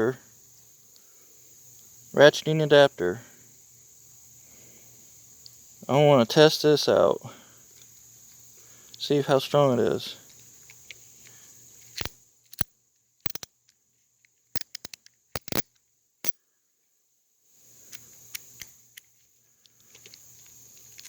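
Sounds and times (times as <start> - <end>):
ratchet clicking: 12.0 - 12.7, 13.3 - 13.5, 14.6 - 15.6.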